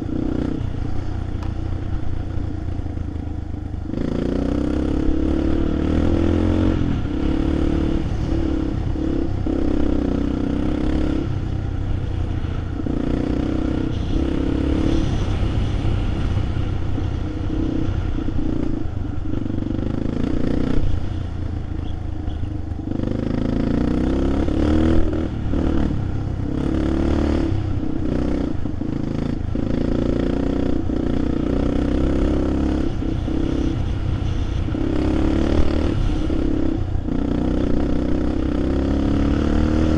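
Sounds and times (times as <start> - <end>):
vehicle engine revving: 0.0 - 39.9.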